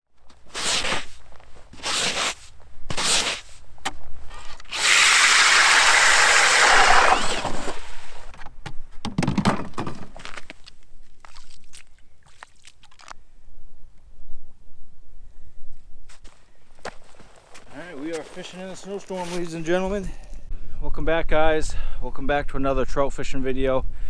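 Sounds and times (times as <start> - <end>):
rasping scrapes: 0.5 - 3.6, 4.3 - 8.3.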